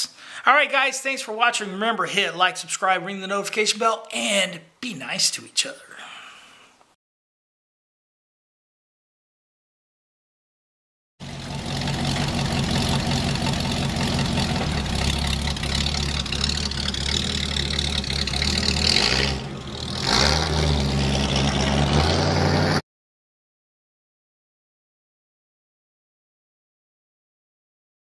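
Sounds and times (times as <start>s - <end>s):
engine running: 11.2s - 22.8s.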